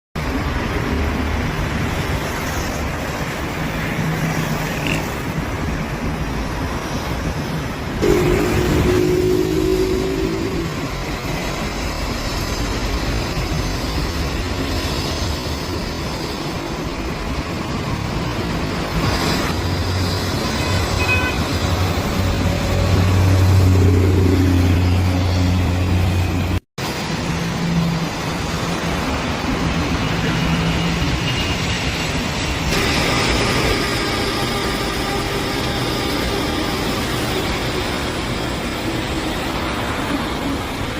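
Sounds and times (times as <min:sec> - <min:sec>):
jet engines rumbling: 0:05.3 - 0:20.5, 0:21.5 - 0:40.9
fixed-pitch drone: 0:08.0 - 0:11.1, 0:32.7 - 0:40.3.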